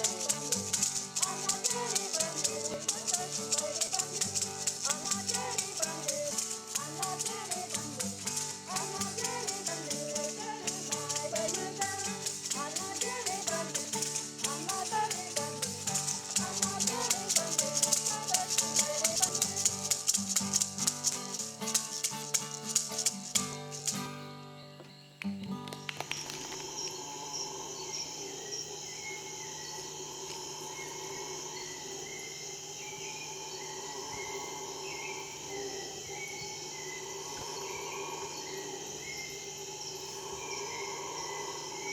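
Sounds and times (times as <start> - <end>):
rattle beat: 0.0 - 24.2
insect chirps: 0.0 - 41.9
insects droning: 0.0 - 41.9.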